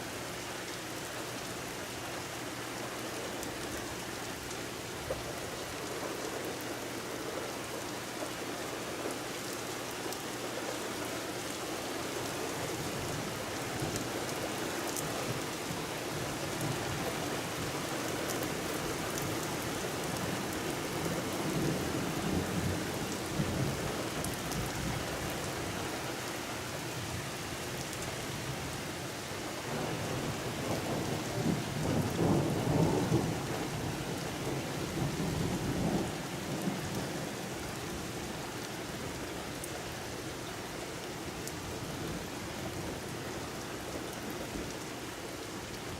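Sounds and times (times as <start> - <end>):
steady rain: 0.0 - 45.9
rain drop ticks: 13.8 - 15.1.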